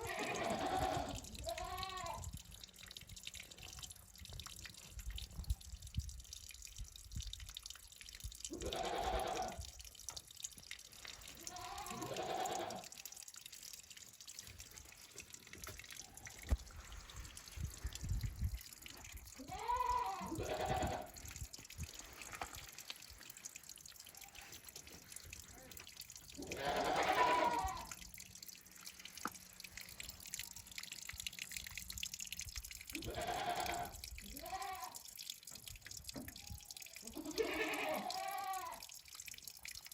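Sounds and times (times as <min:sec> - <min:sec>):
goat bleating: 0:00.0 - 0:02.2, 0:08.5 - 0:09.6, 0:11.4 - 0:12.8, 0:19.4 - 0:21.2, 0:26.4 - 0:27.9, 0:33.0 - 0:35.0, 0:37.0 - 0:38.8.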